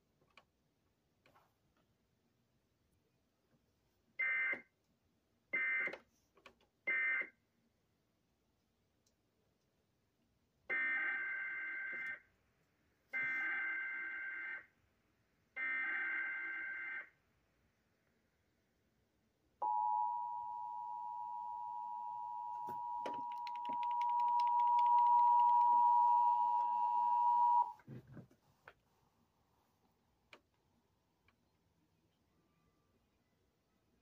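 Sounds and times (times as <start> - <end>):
crackling clicks: 23.0 - 25.8.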